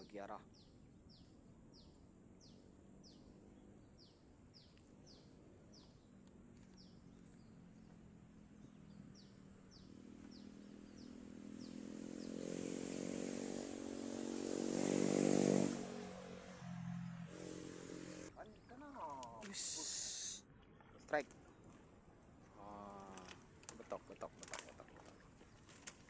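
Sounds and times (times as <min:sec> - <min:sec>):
small engine approaching: 0:06.7 - 0:18.3.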